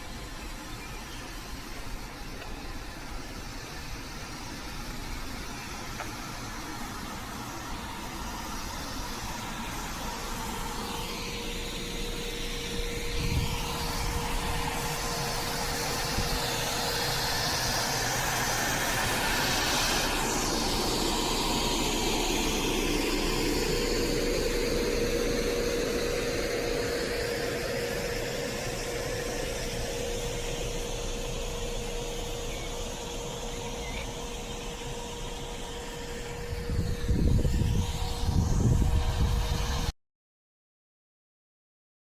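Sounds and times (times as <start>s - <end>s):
electrical hum: 0.0s - 39.9s
train rolling noise: 0.0s - 39.9s
gusty low rumbling: 12.9s - 15.4s, 36.0s - 39.9s.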